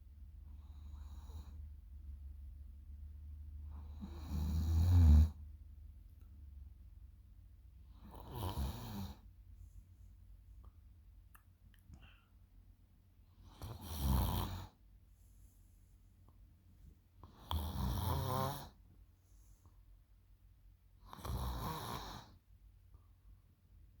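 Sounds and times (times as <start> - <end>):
girl snoring loudly: 3.8 - 5.4, 8.0 - 9.2, 13.6 - 14.7, 17.5 - 18.7, 21.2 - 22.2.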